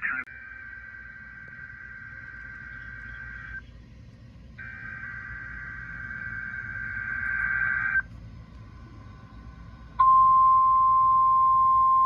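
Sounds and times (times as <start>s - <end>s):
digital data tone bursts: 0.0s - 3.7s, 4.6s - 8.1s.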